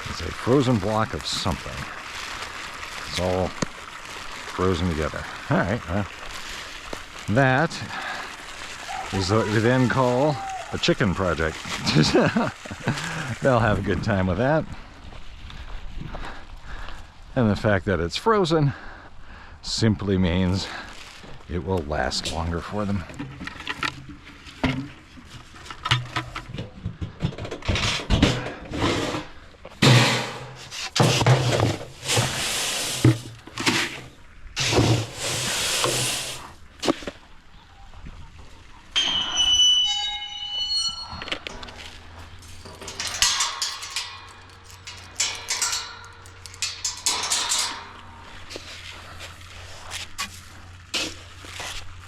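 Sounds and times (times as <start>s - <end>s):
rustling and scraping: 22.2s - 37.2s, 40.0s - 52.0s
scraping: 40.0s - 51.8s
rustling: 40.8s - 52.0s
handling knocks and clicks: 41.4s - 49.1s.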